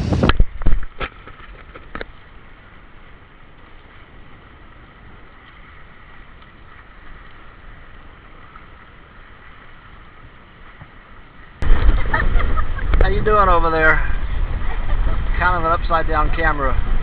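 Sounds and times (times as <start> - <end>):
wind and water rushing: 0.0 - 17.0
sudden loud burst of noise: 11.6 - 13.6.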